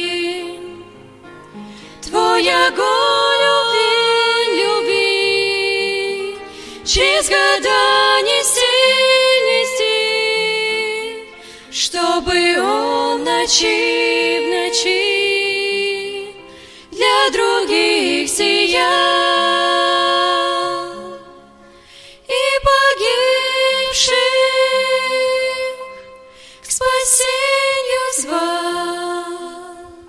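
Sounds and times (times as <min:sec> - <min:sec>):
women singing: 0:00.0 - 0:01.1, 0:02.0 - 0:21.6, 0:22.2 - 0:30.0.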